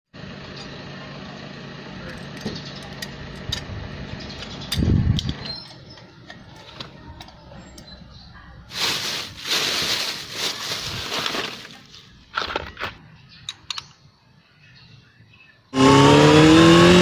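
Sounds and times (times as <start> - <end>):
motorcycle engine idling and revving: 0.2 - 8.3, 15.8 - 17.0.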